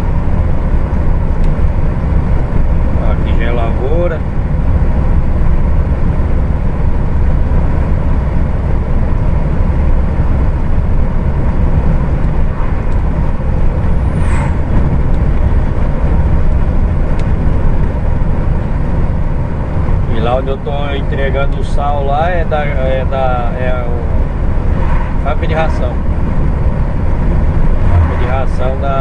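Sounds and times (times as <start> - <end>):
truck engine and road rumble: 0.0 - 29.0
brief high squeak: 14.0 - 14.7.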